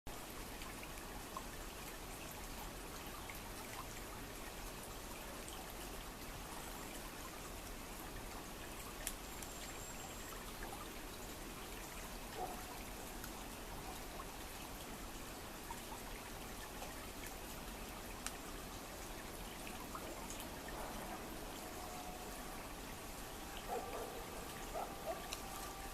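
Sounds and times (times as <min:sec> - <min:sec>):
river water running: 0:00.1 - 0:25.9
faint sharp clicks: 0:09.0 - 0:09.7, 0:18.2 - 0:18.4, 0:25.2 - 0:25.7.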